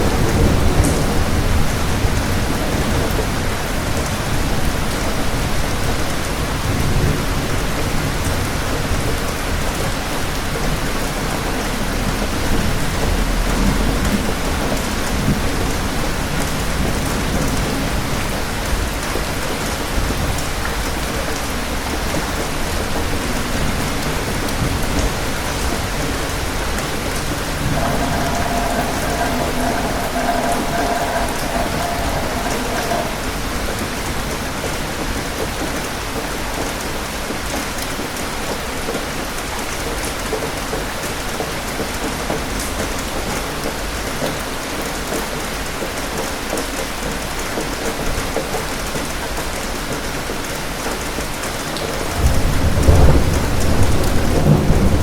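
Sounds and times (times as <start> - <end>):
rain falling: 0.0 - 55.0
thunder rumbling: 24.1 - 34.5, 51.8 - 55.0.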